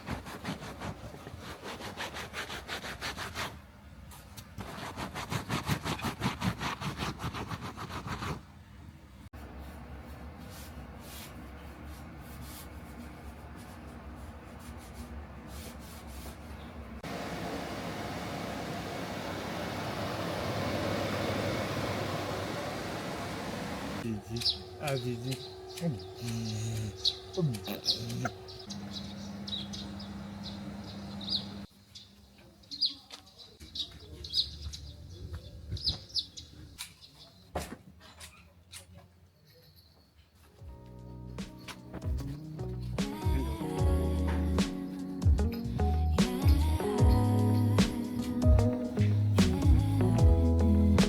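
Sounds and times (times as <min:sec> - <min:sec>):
rustling and rubbing strokes: 0:09.4 - 0:16.7
steady low hum: 0:17.0 - 0:31.7
small birds chirping: 0:24.0 - 0:37.5.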